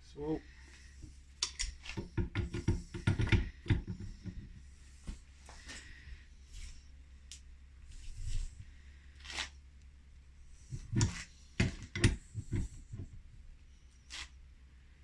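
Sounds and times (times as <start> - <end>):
low steady hum: 0.0 - 15.0
wrench clicking on pipe fitting: 1.4 - 4.4.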